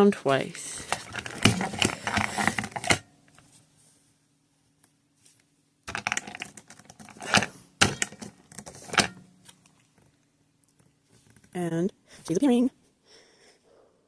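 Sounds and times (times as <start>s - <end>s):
plastic toy clicks and clacks: 5.9s - 9.1s.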